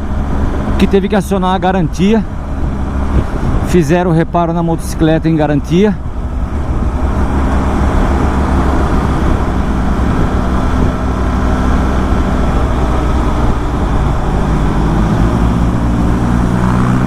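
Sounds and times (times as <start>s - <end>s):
wind rush: 0.0s - 17.0s
motorcycle engine running: 6.0s - 17.0s.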